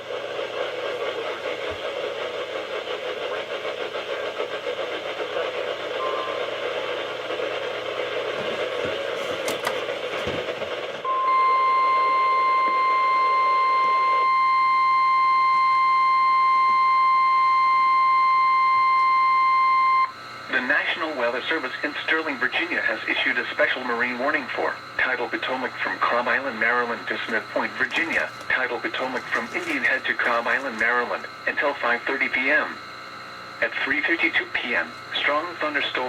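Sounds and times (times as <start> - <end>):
steady alarm tone: 5.7 - 9.2, 11.0 - 20.2, 22.8 - 36.0
radio static hiss: 20.5 - 36.0.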